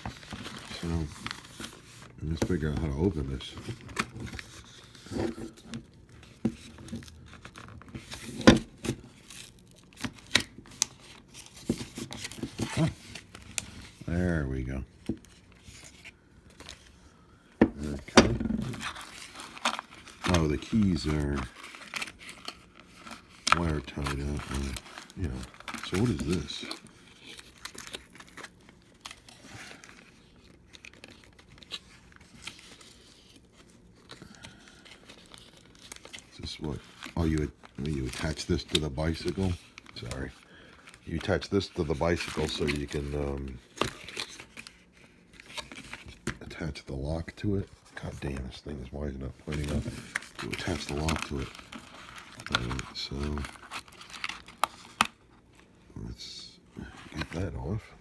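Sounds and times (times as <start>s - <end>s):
packaging crinkling and tearing: 0.0s - 58.0s.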